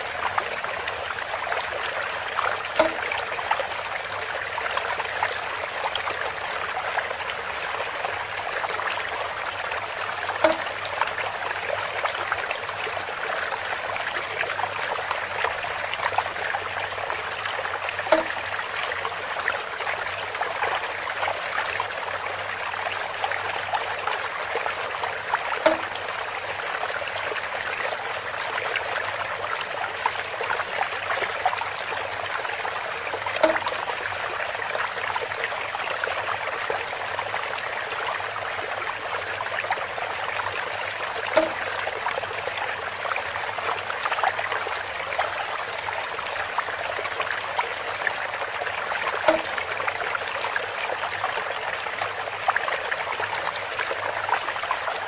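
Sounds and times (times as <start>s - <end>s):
water trickling and splashing: 0.0s - 55.0s
short pitched knock: 2.8s - 3.0s, 10.4s - 10.7s, 18.1s - 18.4s, 25.6s - 26.0s, 41.4s - 41.6s, 49.3s - 49.5s.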